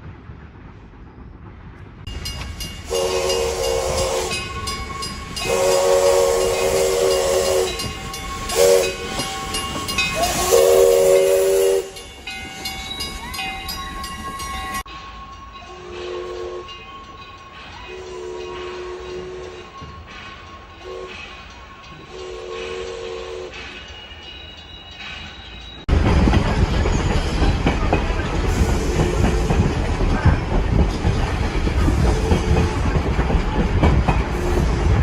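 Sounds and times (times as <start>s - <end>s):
train passing close by: 0.0s - 35.0s
locomotive air horn: 2.9s - 9.6s, 10.2s - 12.0s, 15.7s - 16.7s, 17.9s - 19.6s, 20.8s - 21.2s, 22.1s - 23.5s.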